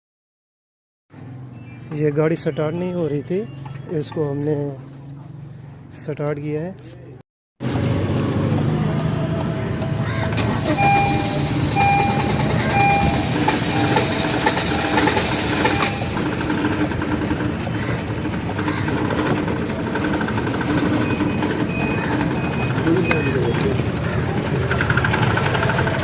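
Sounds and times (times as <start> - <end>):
car engine misfiring: 7.6 - 26.0
short beeps: 10.6 - 16.2.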